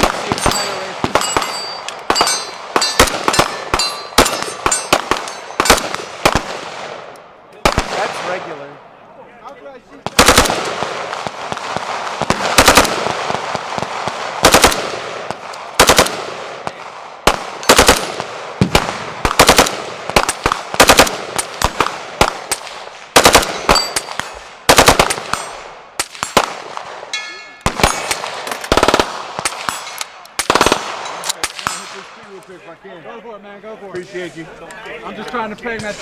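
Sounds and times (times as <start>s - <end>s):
automatic rifle fire bursts: 0.0s - 7.0s, 10.0s - 27.0s, 27.6s - 32.1s.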